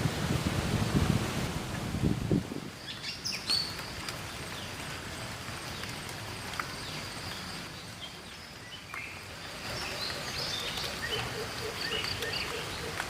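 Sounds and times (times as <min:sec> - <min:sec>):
steady outdoor hiss: 0:00.0 - 0:13.0
birds chirping: 0:05.6 - 0:13.0.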